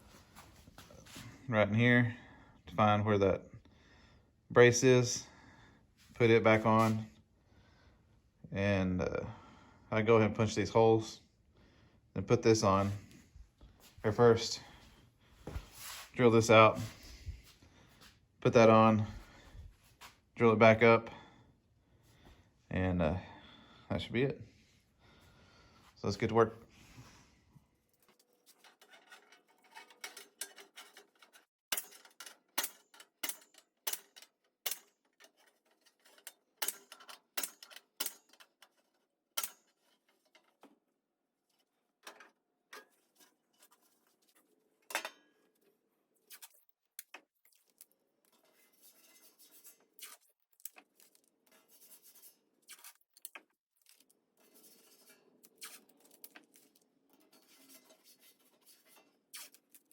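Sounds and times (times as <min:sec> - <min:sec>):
metal scraping and rubbing: 0:28.0 - 0:40.6, 0:48.3 - 0:50.3, 0:51.4 - 0:53.1, 0:54.4 - 0:59.9
hand tools clanking on metal: 0:28.4 - 0:38.8, 0:39.4 - 0:40.6.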